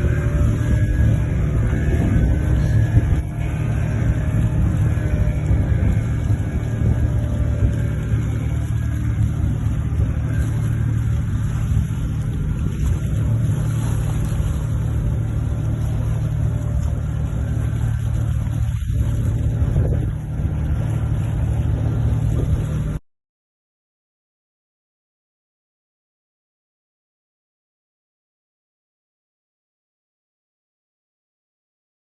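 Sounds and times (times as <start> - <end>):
sea waves breaking: 0.0 - 23.0.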